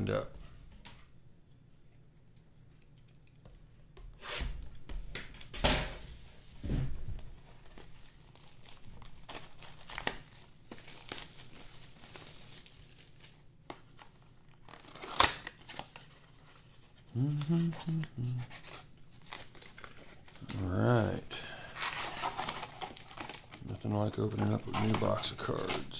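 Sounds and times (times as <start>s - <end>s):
cardboard and wrapping tearing: 8.0s - 13.4s, 14.6s - 16.2s, 21.7s - 25.9s.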